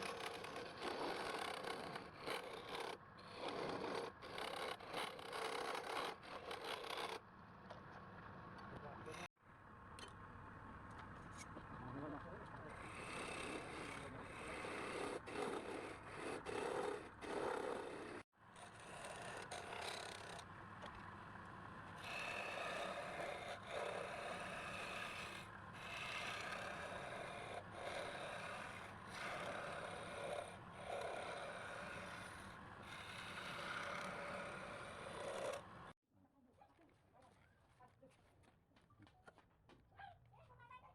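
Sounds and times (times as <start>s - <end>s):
tool scraping wood: 0.0s - 7.2s, 12.6s - 21.1s, 22.0s - 35.9s.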